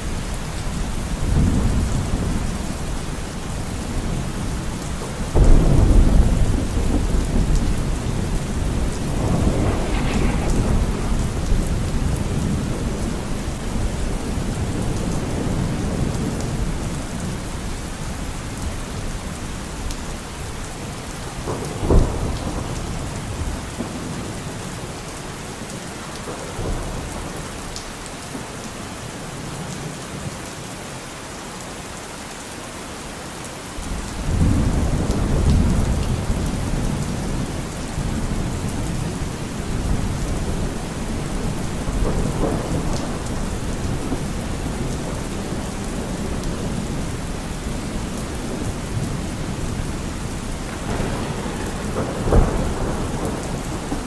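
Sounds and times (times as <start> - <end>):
low rumble of thunder: 0.0 - 28.1, 33.8 - 54.0
steady rainfall: 0.0 - 54.0
sharp thunderclap: 5.3 - 16.9, 21.4 - 24.2, 34.2 - 54.0.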